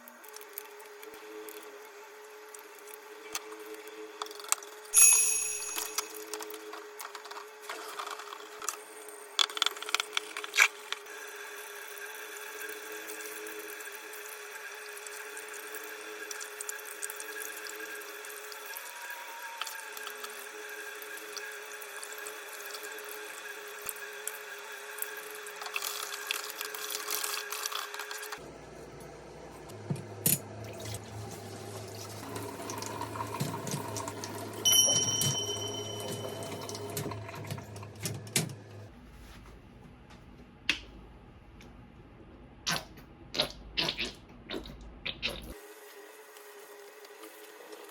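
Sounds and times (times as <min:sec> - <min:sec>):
tap water running into sink: 0:31.0 - 0:34.6.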